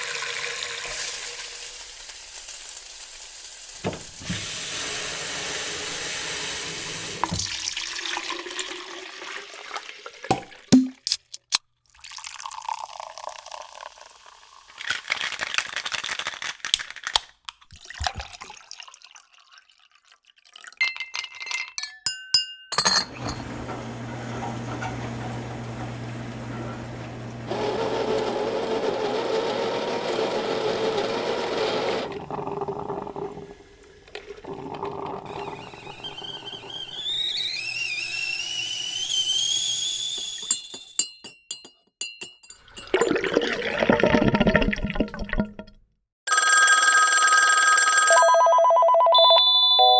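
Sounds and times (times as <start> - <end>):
glass clinks: 20.8 - 23.5, 40.5 - 43.2
appliance hum: 23.0 - 40.5
whistle climbing in pitch: 35.5 - 41.0.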